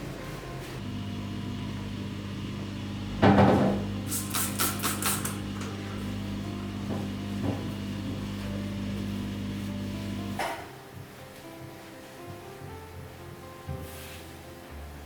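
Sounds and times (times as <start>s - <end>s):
electrical appliance hum: 0.0s - 13.2s
sharp clicks: 4.2s - 5.4s.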